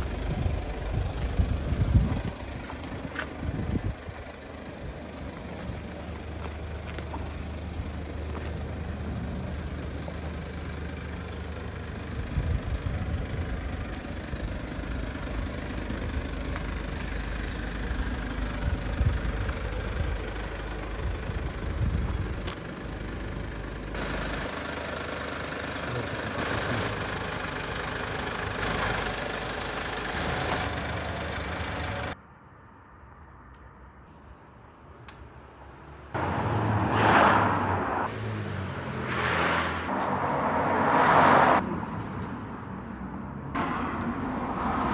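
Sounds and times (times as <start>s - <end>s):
van engine rumbling: 0.0s - 32.2s.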